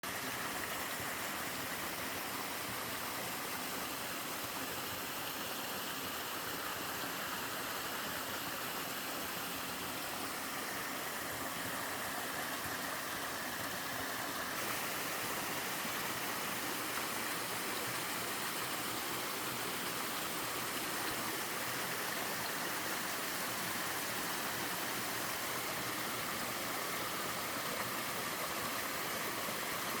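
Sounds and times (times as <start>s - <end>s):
waterfall rushing: 9.8s - 30.0s.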